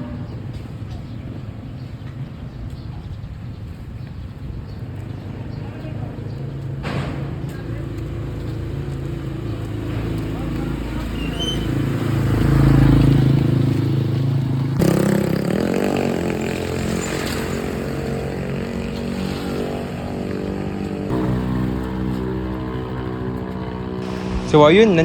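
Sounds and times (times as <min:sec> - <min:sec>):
road traffic: 0:00.0 - 0:25.0
motorcycle engine revving: 0:05.2 - 0:25.0.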